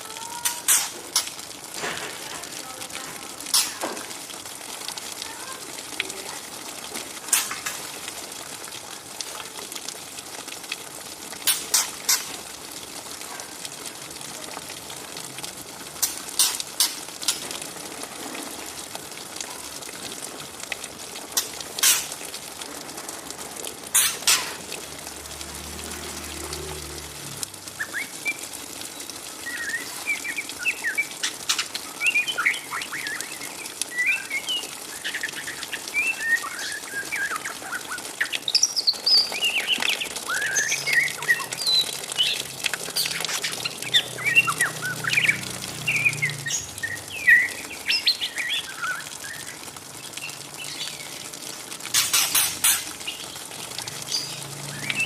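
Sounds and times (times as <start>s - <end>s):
young bird twittering: 0.2s - 1.4s, 27.8s - 49.6s, 51.9s - 53.3s.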